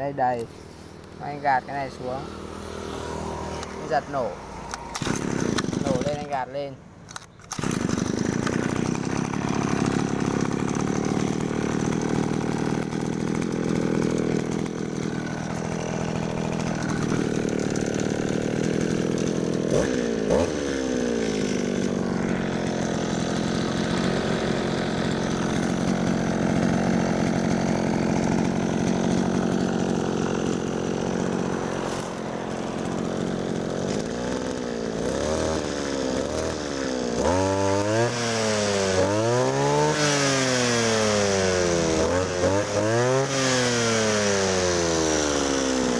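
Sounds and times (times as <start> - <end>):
brush cutter engine revving: 0.0 - 45.9.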